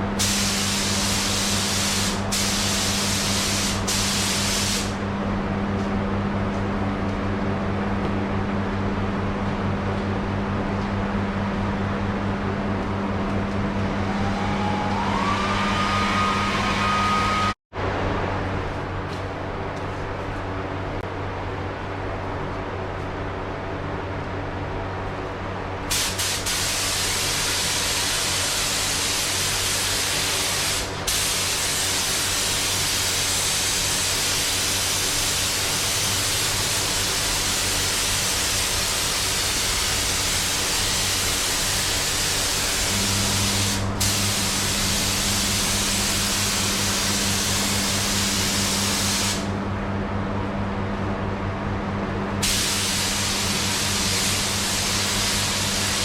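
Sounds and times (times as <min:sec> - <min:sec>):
paint spray gun hissing: 0:00.2 - 0:05.0, 0:25.9 - 0:49.5, 0:52.4 - 0:56.0
low hum: 0:05.0 - 0:25.6, 0:49.5 - 0:52.4.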